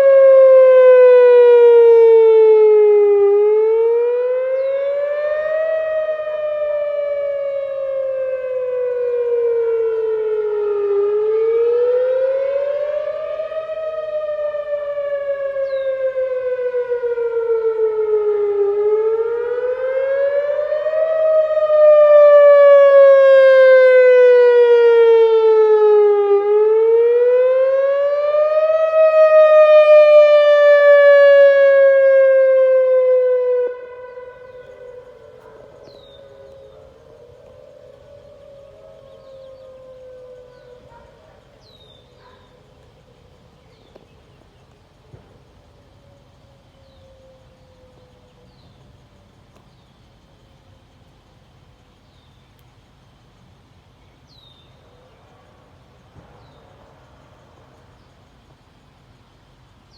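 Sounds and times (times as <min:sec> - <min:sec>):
electronic siren wailing: 0:00.0 - 0:42.3.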